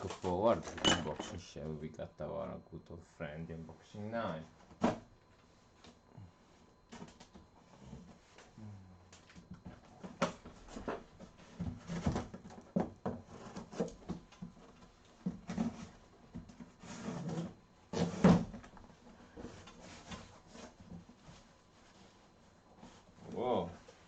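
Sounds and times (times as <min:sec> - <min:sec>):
packing rustling and scraping: 0:09.8 - 0:23.3.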